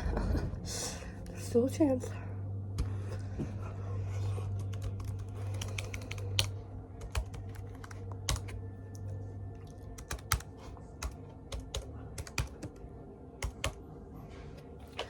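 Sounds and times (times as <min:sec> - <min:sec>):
low steady hum: 0:00.0 - 0:15.0
laptop keyboard typing: 0:04.4 - 0:13.8.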